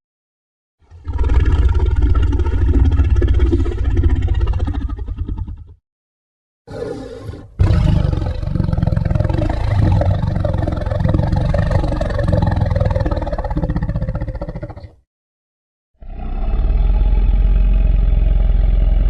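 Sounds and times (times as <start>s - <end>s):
monster roar: 6.7s - 14.8s, 16.0s - 19.0s.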